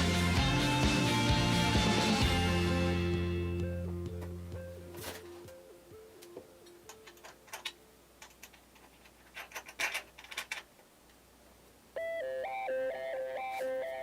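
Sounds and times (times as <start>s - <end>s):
soft background music: 0.0s - 8.1s.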